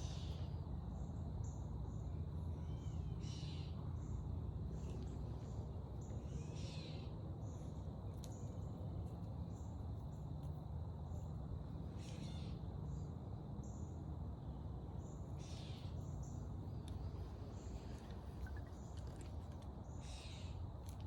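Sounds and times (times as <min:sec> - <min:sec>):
insects whining: 0:11.0 - 0:21.0.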